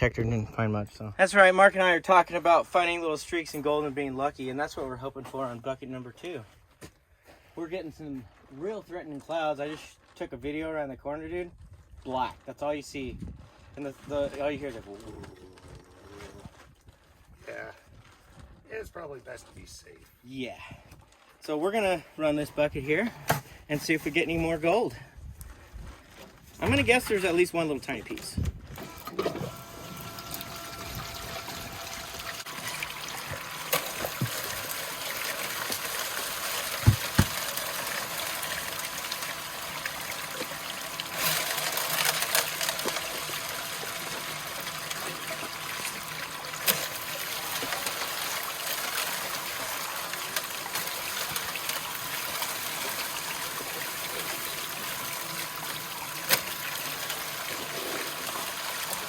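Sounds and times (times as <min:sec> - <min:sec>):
water running through sluice: 0:26.6 - 0:59.0
sharp knocks: 0:36.8 - 0:37.4.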